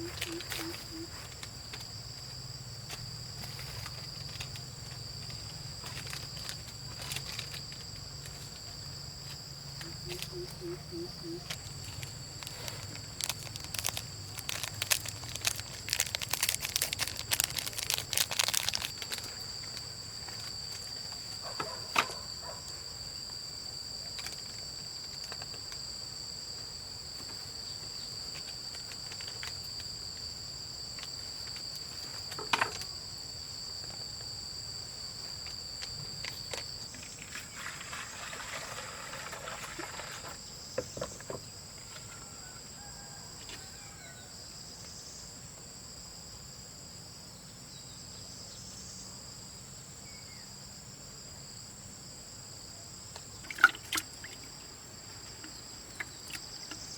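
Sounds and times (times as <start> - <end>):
crackling and rustling: 0.0 - 10.6, 11.4 - 23.4, 24.1 - 25.9, 27.1 - 30.3
insects calling: 0.0 - 56.9.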